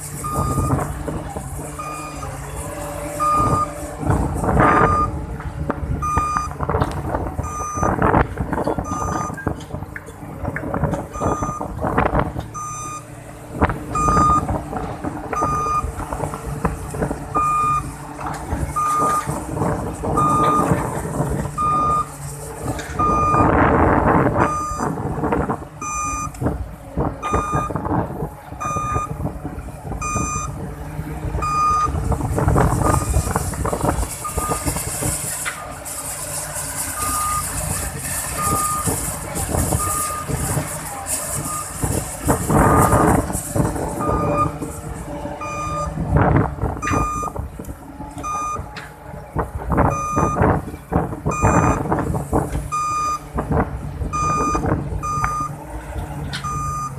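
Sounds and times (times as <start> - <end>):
excavator engine running: 0.0 - 56.9
excavator alarm beeping: 0.2 - 1.0, 1.7 - 2.4, 3.0 - 5.2, 6.0 - 6.6, 7.4 - 9.6, 11.0 - 11.8, 12.5 - 13.2, 13.9 - 14.6, 15.3 - 16.0, 17.2 - 18.0, 18.7 - 22.2, 23.0 - 26.5, 27.2 - 27.9, 28.6 - 29.2, 30.0 - 30.6, 31.4 - 32.0, 32.6 - 34.7, 36.9 - 37.7, 38.3 - 40.7, 41.3 - 47.4, 48.1 - 48.8, 49.8 - 50.6, 51.3 - 52.0, 52.6 - 53.3, 54.1 - 55.6, 56.4 - 56.9.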